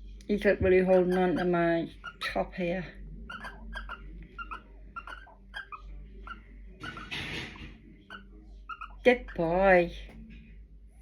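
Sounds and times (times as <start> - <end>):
owl squeaky calls: 1.0 - 2.4, 3.3 - 9.4.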